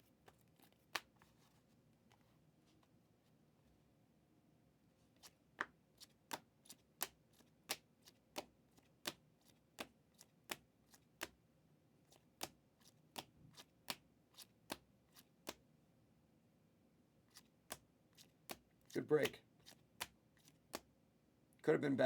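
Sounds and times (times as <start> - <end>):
cards clicking on a table: 19.2 - 20.9.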